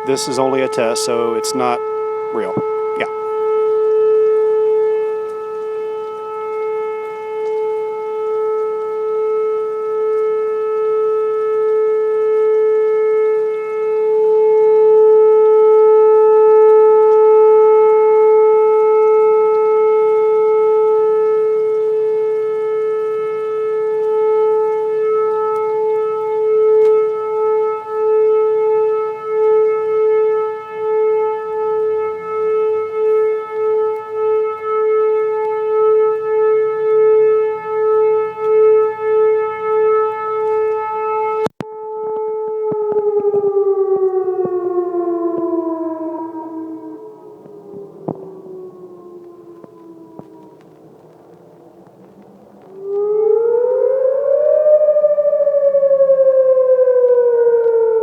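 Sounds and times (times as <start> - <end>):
warning siren steady tone: 0.0 - 58.0.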